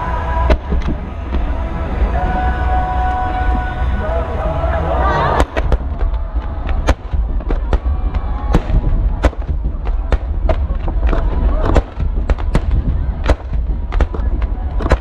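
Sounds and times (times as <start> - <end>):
deep rumble of booms: 0.0 - 2.2, 5.3 - 15.0
firework shells bursting: 5.4 - 15.0.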